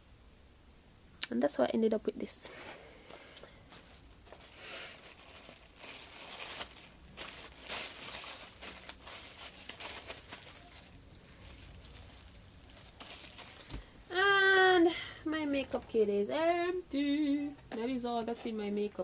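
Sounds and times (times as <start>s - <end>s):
packaging rustling and crinkling: 3.1s - 14.1s.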